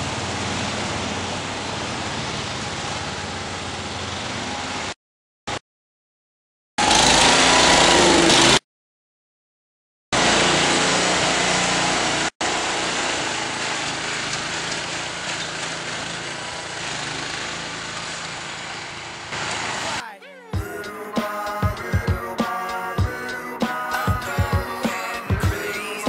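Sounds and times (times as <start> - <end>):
lawn tractor engine running: 0.0 - 4.7, 6.8 - 8.6, 10.2 - 20.7.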